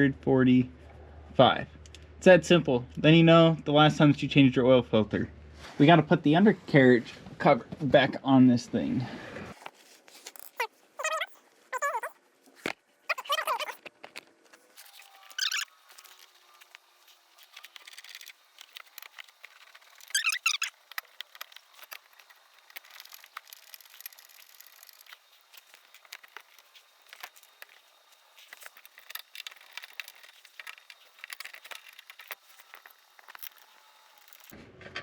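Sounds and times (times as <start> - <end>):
plastic panel scraping: 14.8 - 34.6.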